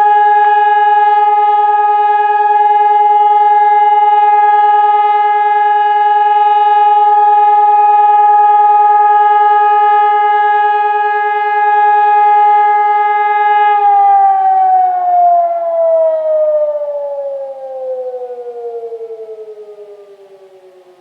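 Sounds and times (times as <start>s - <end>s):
civil defence siren winding down: 0.0s - 21.0s.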